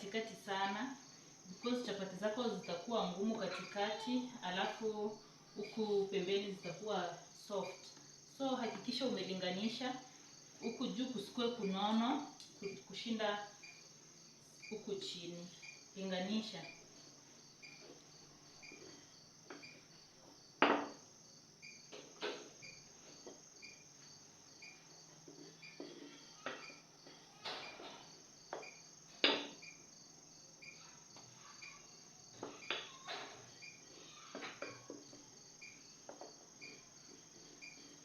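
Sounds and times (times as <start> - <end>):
crickets chirping: 0.0 - 38.0
rolling pin knocking on board: 20.6 - 21.0.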